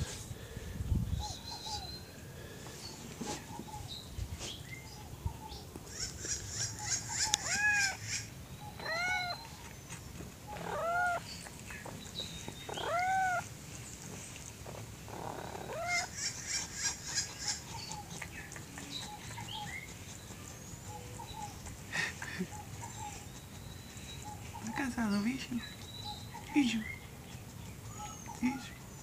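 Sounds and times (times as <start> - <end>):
kitten meowing: 8.8 - 9.4, 12.7 - 13.4.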